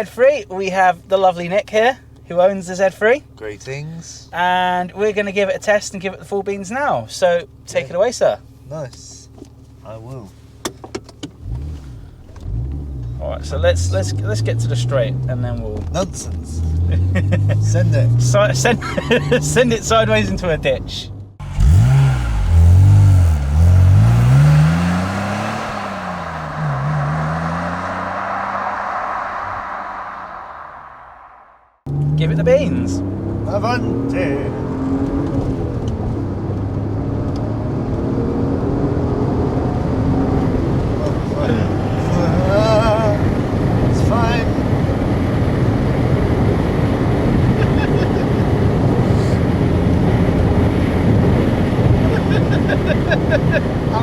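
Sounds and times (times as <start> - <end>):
road and wind noise: 0.0 - 54.0
car engine accelerating hard: 11.3 - 54.0.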